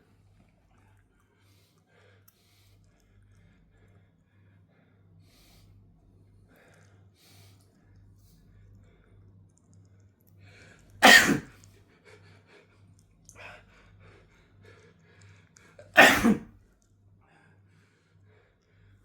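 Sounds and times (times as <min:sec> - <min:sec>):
faint breaths: 0:00.0 - 0:16.0, 0:16.7 - 0:19.0
man sneezing: 0:11.0 - 0:11.5, 0:16.0 - 0:16.5.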